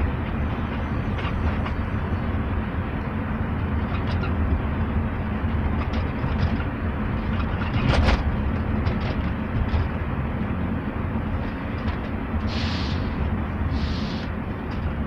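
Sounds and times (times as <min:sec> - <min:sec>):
road noise rumble in car cabin: 0:00.0 - 0:15.0.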